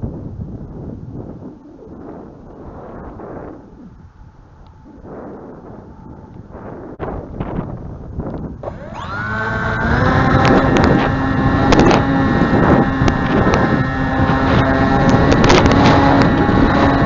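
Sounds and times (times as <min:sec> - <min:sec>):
wind buffeting microphone: 0:00.0 - 0:17.0
model plane motor whine: 0:08.2 - 0:17.0.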